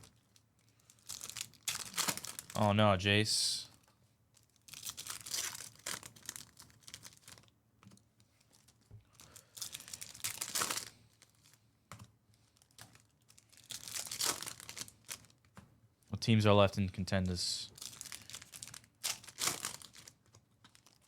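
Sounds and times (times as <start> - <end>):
card pack wrappers crinkling and tearing: 0.8 - 2.6, 4.4 - 7.5, 8.5 - 11.6, 12.4 - 15.4, 17.7 - 21.0.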